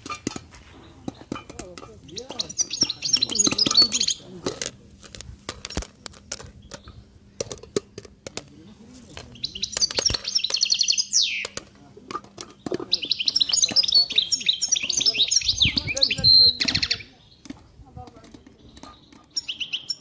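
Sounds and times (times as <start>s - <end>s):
songbird trilling: 2.0s - 4.3s, 9.3s - 11.6s, 12.5s - 20.0s.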